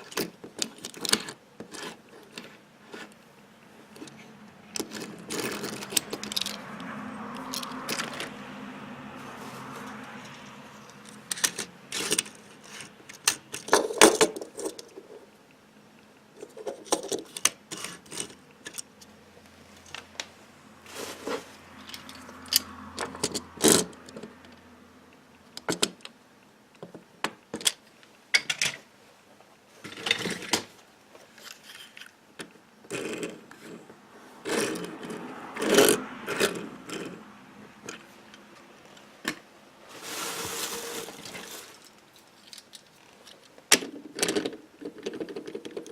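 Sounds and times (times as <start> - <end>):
toy cars clicking and rattling: 0.0 - 3.2, 3.9 - 8.4, 9.9 - 15.2, 16.4 - 18.9, 21.8 - 24.6, 25.5 - 26.2, 31.4 - 37.2, 40.1 - 45.9.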